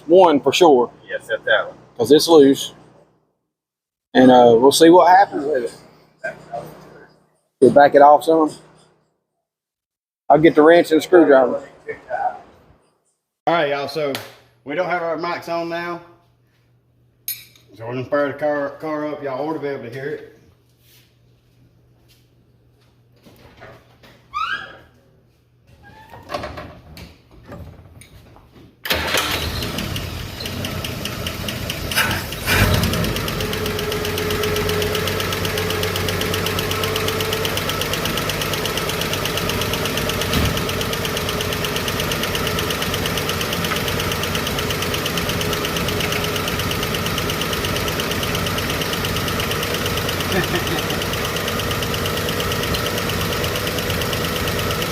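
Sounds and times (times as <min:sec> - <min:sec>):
car engine starting and idling: 0:28.9 - 0:54.9
fast even engine ticking: 0:29.8 - 0:54.9.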